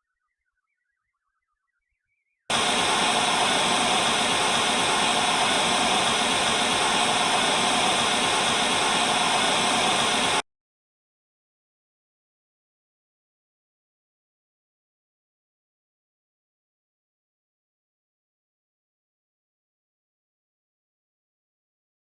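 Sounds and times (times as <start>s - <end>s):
static-like hiss: 2.5s - 10.4s.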